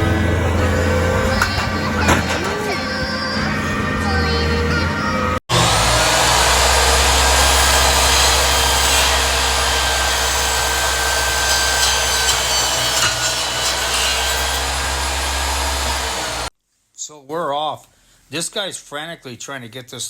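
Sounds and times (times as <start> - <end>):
grinding machinery: 0.0 - 16.5.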